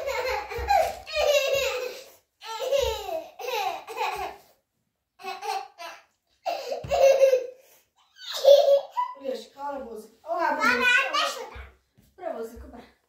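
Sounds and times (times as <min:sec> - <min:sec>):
young child laughing: 0:00.0 - 0:04.4, 0:05.2 - 0:09.2.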